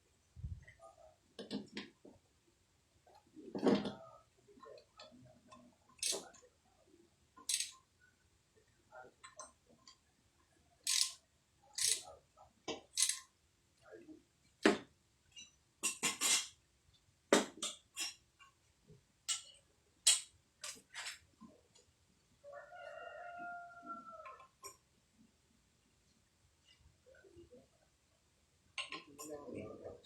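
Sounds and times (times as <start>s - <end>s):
tools clicking and knocking: 6.0s - 6.4s, 7.4s - 7.8s, 10.9s - 11.2s, 11.8s - 12.0s, 12.7s - 13.3s, 19.3s - 20.8s
rooster crowing: 22.5s - 24.4s.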